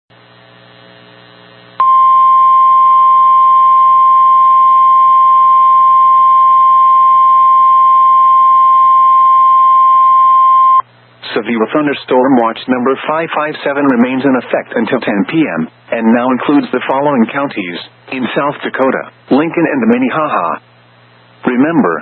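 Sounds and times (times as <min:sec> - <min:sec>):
faint low hum: 0:00.2 - 0:22.0
steady high alarm beep: 0:01.8 - 0:10.8.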